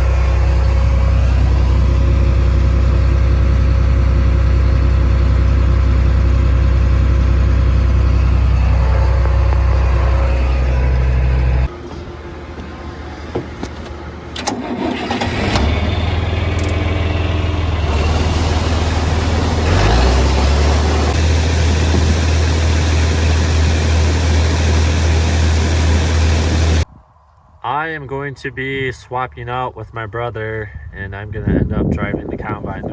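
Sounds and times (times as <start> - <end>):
diesel engine running: 0.0 - 26.9
engine starting up: 8.4 - 26.8.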